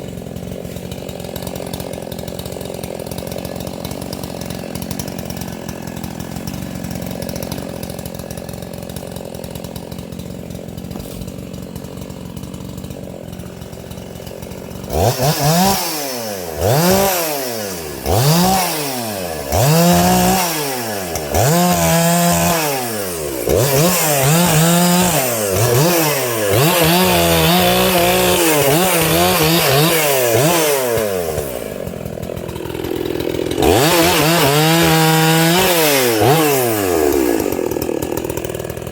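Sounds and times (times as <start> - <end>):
chainsaw idling and revving: 0.0 - 38.9.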